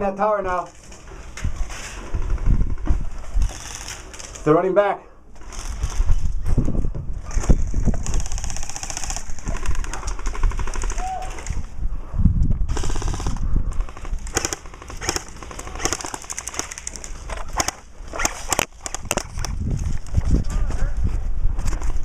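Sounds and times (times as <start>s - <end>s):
airsoft guns firing: 3.4s - 4.4s, 7.3s - 11.6s, 12.7s - 19.1s.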